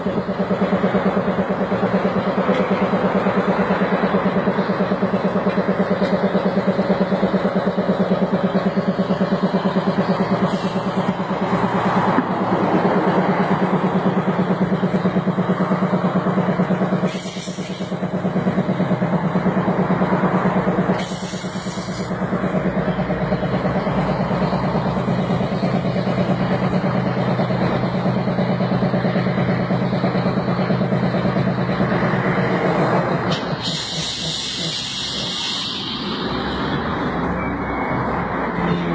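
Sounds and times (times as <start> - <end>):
short hisses: 17.0 - 17.9, 33.3 - 36.2.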